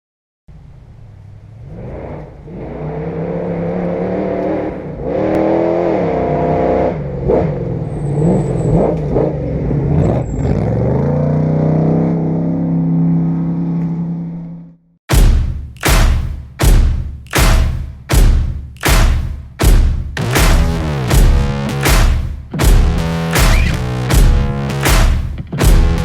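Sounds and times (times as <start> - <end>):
race vehicle engine revving: 1.5 - 14.5, 20.2 - 26.0.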